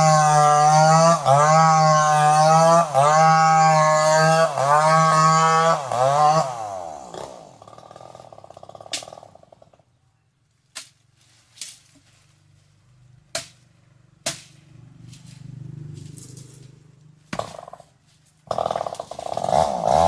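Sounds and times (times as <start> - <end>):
chainsaw engine winding down: 0.0 - 9.9, 18.4 - 20.0.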